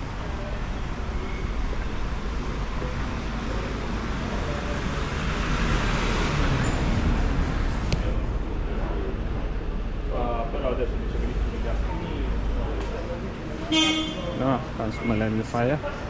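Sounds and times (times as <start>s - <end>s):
street traffic: 0.0s - 16.0s
vehicle passing: 3.4s - 9.6s.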